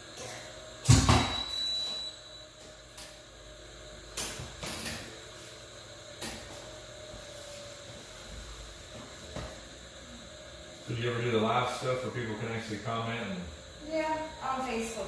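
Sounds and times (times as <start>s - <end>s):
low steady room hum: 0.0s - 15.0s
high-pitched beep: 1.3s - 2.4s.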